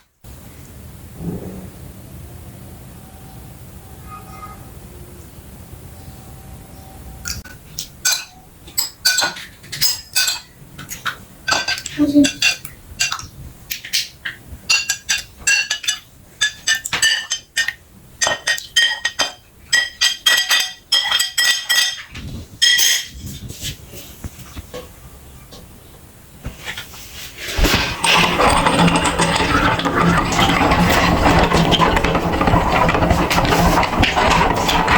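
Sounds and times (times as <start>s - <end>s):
metal meat grinder crunching: 27.6s - 34.9s.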